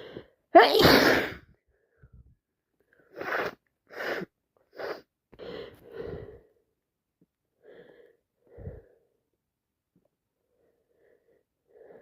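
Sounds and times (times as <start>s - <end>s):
person sneezing: 0.6s - 1.5s
wheezy gasping breaths: 2.9s - 6.6s.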